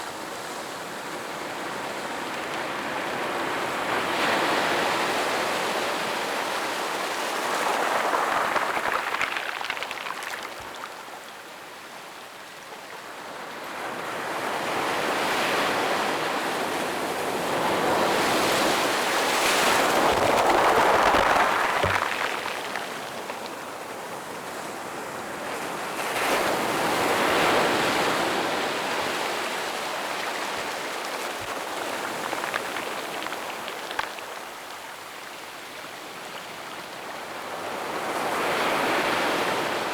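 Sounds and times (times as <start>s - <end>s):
small waves breaking on beach: 0.0s - 11.2s, 15.8s - 35.9s.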